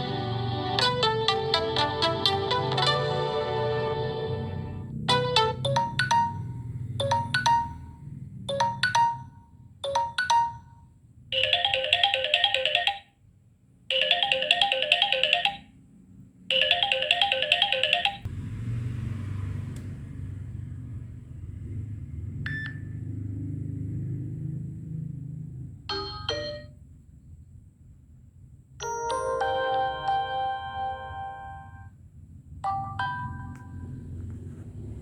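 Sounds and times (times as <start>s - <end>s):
bright phone ringtone: 5.1s - 13.1s, 13.9s - 15.8s, 16.5s - 18.3s, 25.9s - 26.8s, 28.8s - 32.0s, 32.7s - 33.9s
two-note phone chimes: 28.8s - 31.9s.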